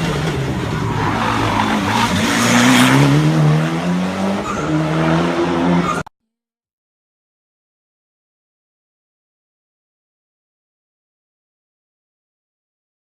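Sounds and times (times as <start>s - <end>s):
race car engine accelerating: 0.0s - 6.1s.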